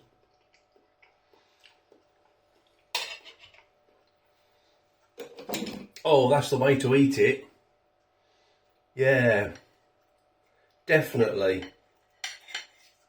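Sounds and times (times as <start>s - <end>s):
cutlery clinking on a plate: 3.0s - 3.6s, 5.2s - 5.9s, 11.6s - 13.0s.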